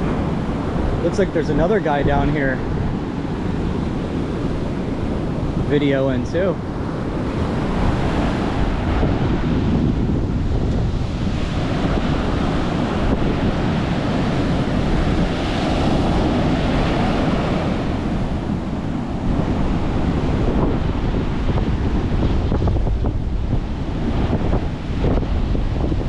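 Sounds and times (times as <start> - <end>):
ocean surf breaking: 0.0 - 26.0
wind buffeting microphone: 0.0 - 26.0.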